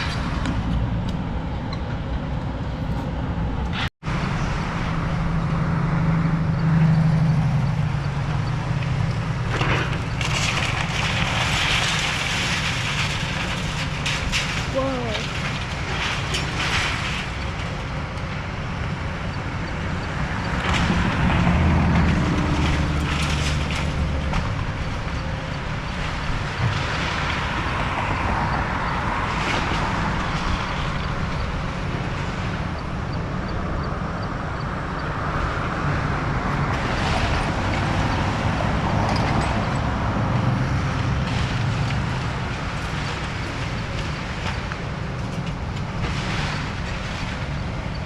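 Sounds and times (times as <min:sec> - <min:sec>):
debris cracking and crashing: 0:08.7 - 0:19.1, 0:20.2 - 0:32.7, 0:36.7 - 0:48.0.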